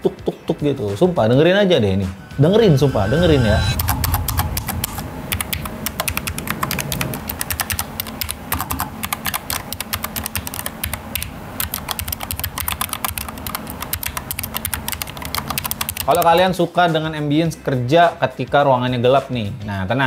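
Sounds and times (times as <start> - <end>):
mechanical keyboard typing: 6.0 - 16.3.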